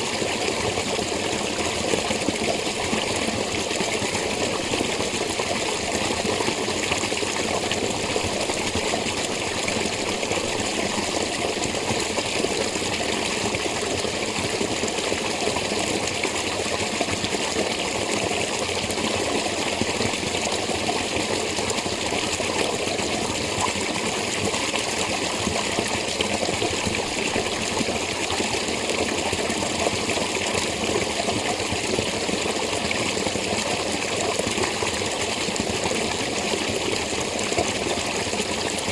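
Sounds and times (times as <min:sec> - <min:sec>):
spring water running: 0:00.0 - 0:38.9.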